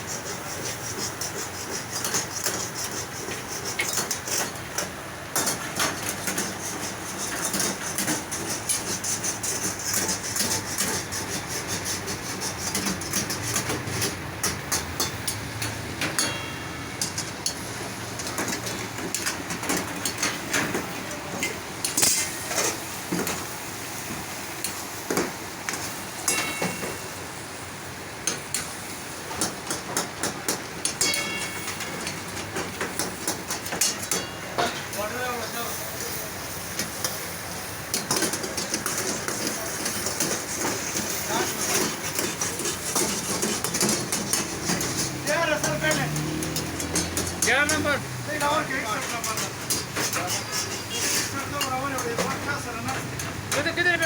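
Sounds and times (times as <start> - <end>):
metal cookware clattering: 12.6 - 22.8, 26.2 - 27.1, 30.8 - 35.0, 37.9 - 54.0
ringing metal strikes: 16.2 - 16.7, 26.3 - 27.0, 31.0 - 31.8.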